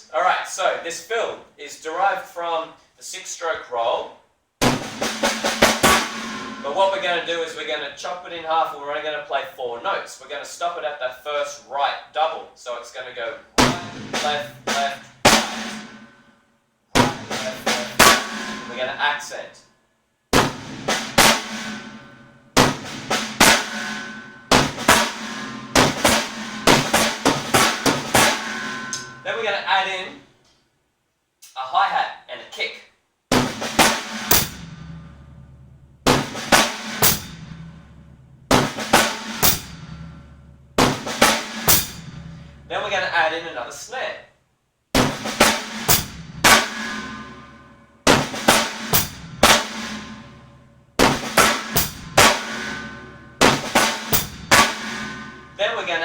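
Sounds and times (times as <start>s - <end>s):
snare drum strokes: 4.6s - 7.1s, 13.6s - 16.1s, 17.0s - 19.1s, 20.3s - 29.4s, 33.3s - 34.9s, 36.1s - 37.6s, 38.5s - 40.0s, 40.8s - 42.5s, 45.0s - 47.4s, 48.1s - 50.3s, 51.0s - 55.7s.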